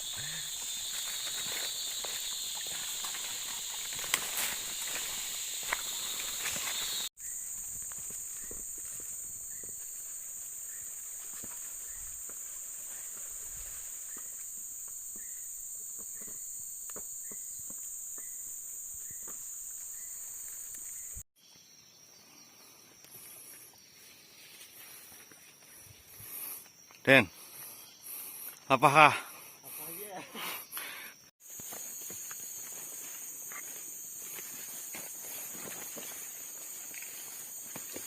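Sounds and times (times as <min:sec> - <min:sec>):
footsteps on forest floor: 0:00.0 - 0:16.4, 0:23.2 - 0:28.7, 0:31.4 - 0:38.0
insect drone: 0:00.0 - 0:38.0.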